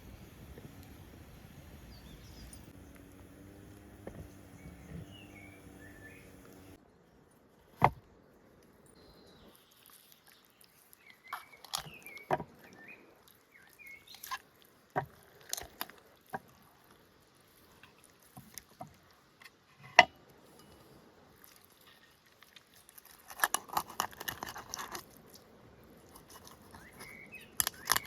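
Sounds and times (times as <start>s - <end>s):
faint bird chirps: 0.0s - 3.1s, 3.7s - 6.9s, 26.6s - 28.0s.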